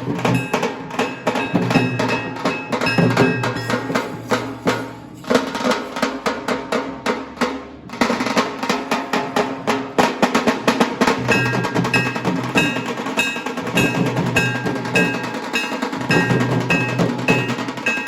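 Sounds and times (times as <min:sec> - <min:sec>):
fast drumming with rolls: 0:00.0 - 0:18.0
ringing bell-like notes: 0:00.2 - 0:05.4, 0:11.3 - 0:18.0.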